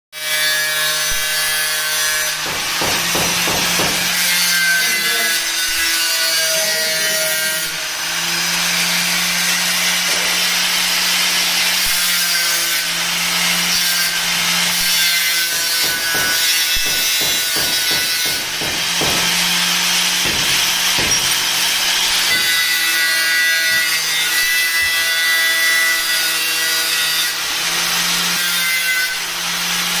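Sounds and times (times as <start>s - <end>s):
angle grinder cutting metal: 0.2s - 30.0s.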